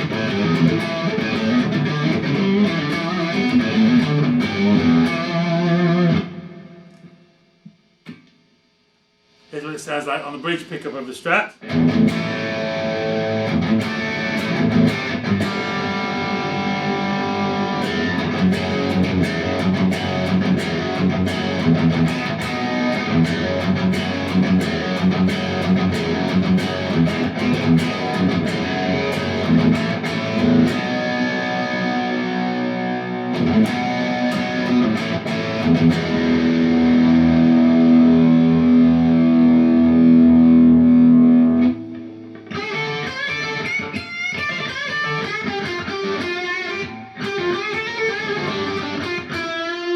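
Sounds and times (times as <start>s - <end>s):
distorted electric guitar riffs: 0.0s - 49.9s.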